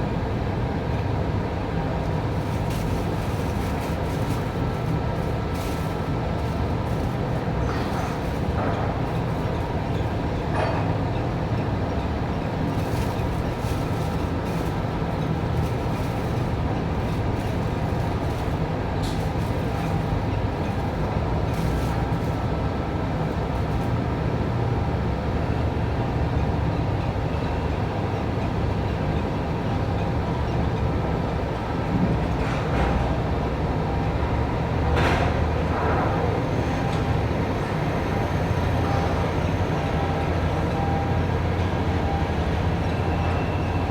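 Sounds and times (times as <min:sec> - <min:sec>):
heavy port machinery drone: 0:33.4 - 0:43.9.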